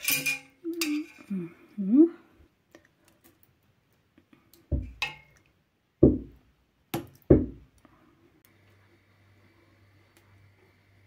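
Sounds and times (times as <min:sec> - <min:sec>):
ladle clinking: 0:00.0 - 0:01.3, 0:04.9 - 0:05.4.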